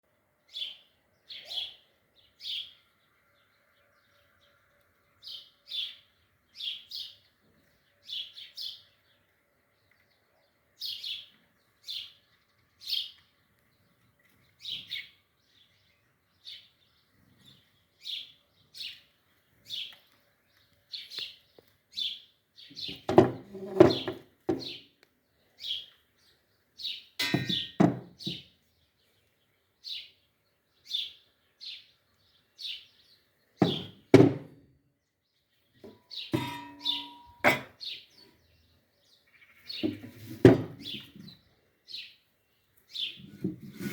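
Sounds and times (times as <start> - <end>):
small bird chirping: 0.5 - 23.1, 35.3 - 40.2.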